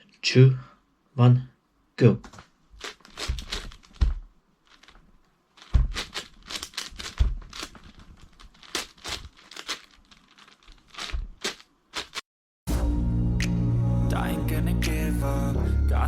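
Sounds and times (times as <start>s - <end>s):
plastic puzzle cube clacking: 2.8s - 12.2s.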